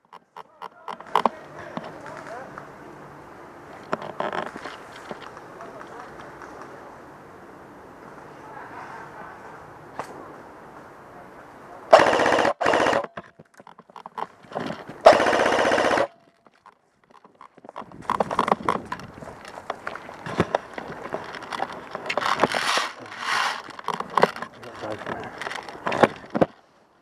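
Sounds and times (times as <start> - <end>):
airsoft rifle firing bursts: 11.9 - 13.1, 15.0 - 16.2
rustling and scuffing: 16.2 - 27.0.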